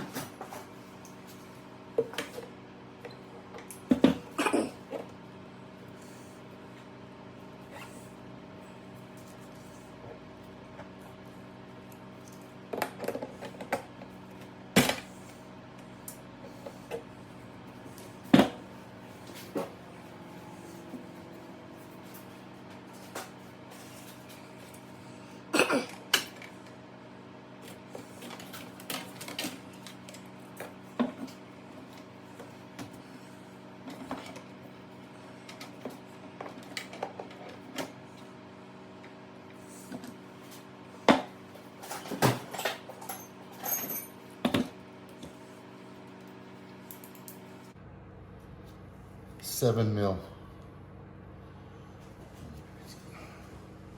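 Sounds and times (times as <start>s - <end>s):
metal tools clinking and knocking: 41.8s - 44.2s
steady hum: 46.9s - 53.9s.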